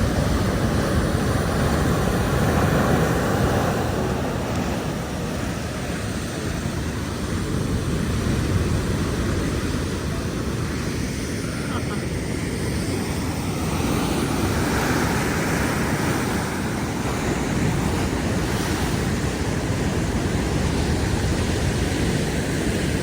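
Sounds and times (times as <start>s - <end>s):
waves breaking: 0.0s - 23.0s.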